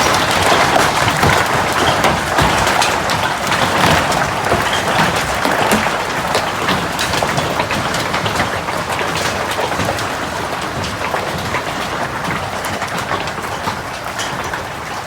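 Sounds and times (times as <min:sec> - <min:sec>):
hailstones striking hard surfaces: 0:00.0 - 0:14.6.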